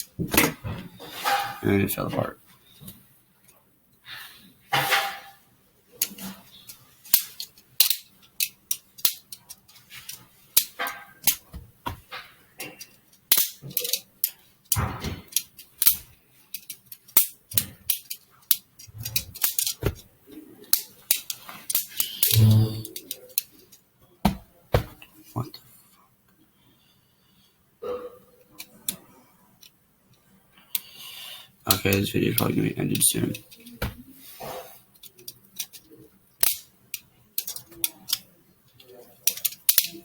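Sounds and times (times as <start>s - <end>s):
plastic clicks and clacks: 6.0s - 20.0s, 35.0s - 40.0s.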